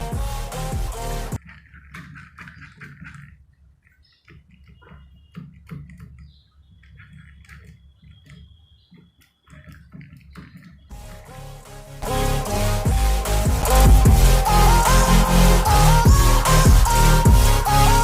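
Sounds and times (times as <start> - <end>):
electronic dance music: 0.0 - 1.4, 10.9 - 18.0.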